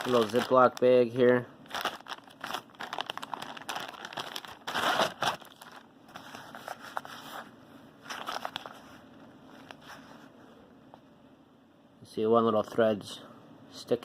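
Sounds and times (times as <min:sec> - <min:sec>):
plastic bag crinkling: 0:00.0 - 0:05.9, 0:08.1 - 0:08.8.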